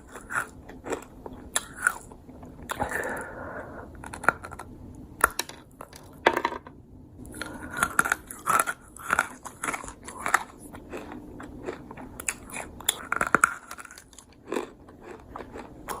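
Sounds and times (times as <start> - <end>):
crunchy dried fruit crunching: 0.0 - 2.1, 7.4 - 16.0
soft chewing: 0.0 - 3.3, 3.9 - 4.7, 7.2 - 16.0.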